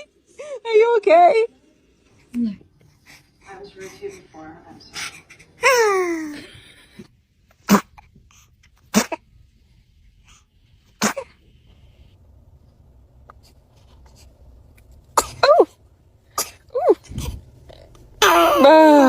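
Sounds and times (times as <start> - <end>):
baby sneezing: 7.6 - 8.1, 8.8 - 9.2, 11.0 - 11.4, 15.2 - 17.4.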